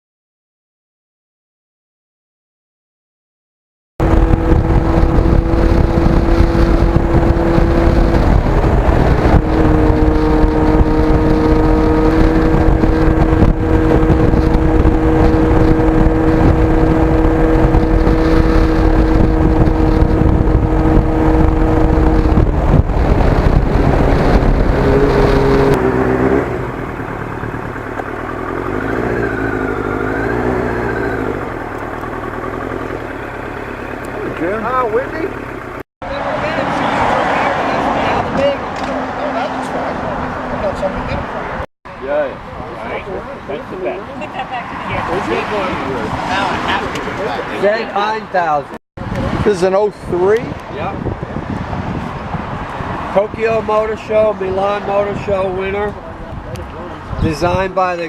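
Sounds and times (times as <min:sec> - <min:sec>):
wind rushing on microphone: 0:04.0 - 0:33.1, 0:49.0 - 0:58.0
motorcycle engine running: 0:04.0 - 0:35.8.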